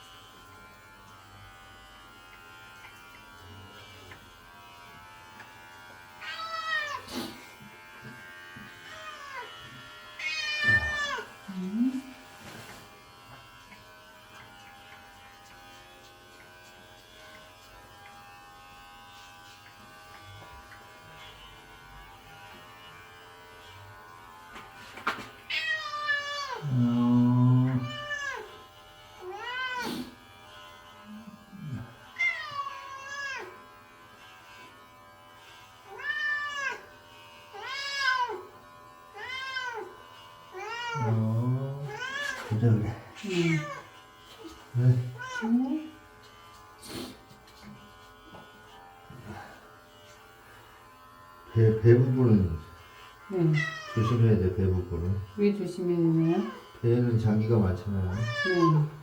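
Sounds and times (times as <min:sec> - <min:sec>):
electric clipper humming: 0:00.0 - 0:59.0
cat meowing loudly: 0:06.2 - 0:07.1, 0:10.2 - 0:11.3, 0:25.5 - 0:26.6, 0:27.8 - 0:28.5, 0:29.2 - 0:30.0, 0:32.2 - 0:33.5, 0:35.9 - 0:36.8, 0:37.6 - 0:38.4, 0:39.2 - 0:39.9, 0:40.6 - 0:41.1, 0:41.9 - 0:42.5, 0:43.2 - 0:43.9, 0:53.5 - 0:54.2, 0:58.1 - 0:59.0.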